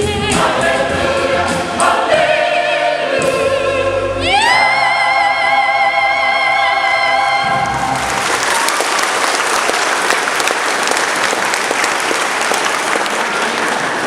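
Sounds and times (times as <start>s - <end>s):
choir singing: 0.0s - 7.9s
audience applauding: 7.4s - 14.0s.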